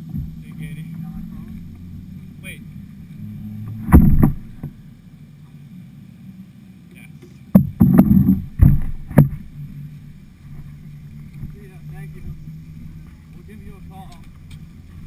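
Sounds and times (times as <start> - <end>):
paddle splashes and knocks: 3.7 - 4.8, 7.5 - 9.5.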